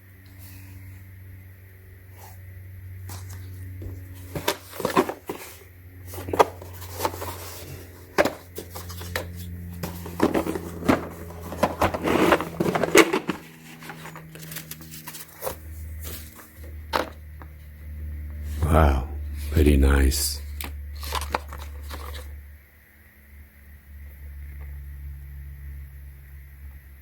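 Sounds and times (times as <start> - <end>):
plastic and steel tools rattling: 4.2 - 17.2, 21.0 - 22.3.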